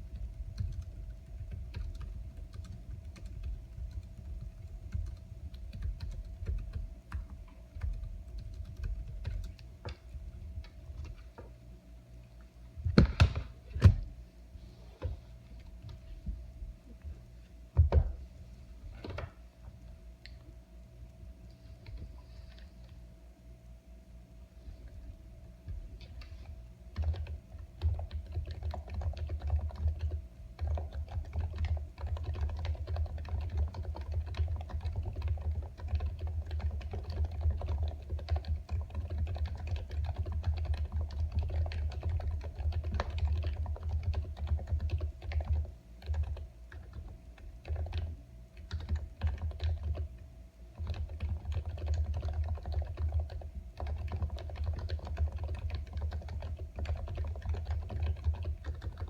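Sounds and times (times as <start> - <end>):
computer keyboard typing: 0.0 - 11.4, 25.7 - 50.1, 50.8 - 59.0.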